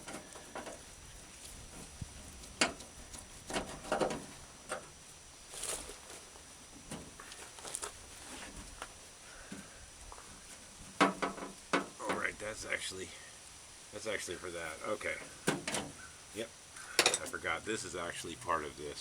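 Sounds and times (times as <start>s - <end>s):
light clicks and rattles of hand work: 0.0s - 4.9s, 15.2s - 16.0s.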